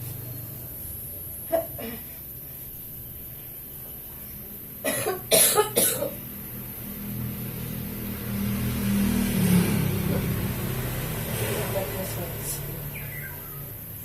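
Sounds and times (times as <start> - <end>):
person coughing: 4.8 - 6.2.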